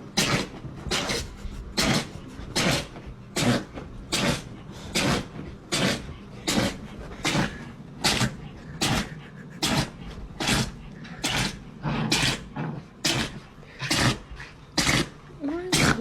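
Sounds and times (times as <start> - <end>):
dog sneezing: 0.2 - 16.0.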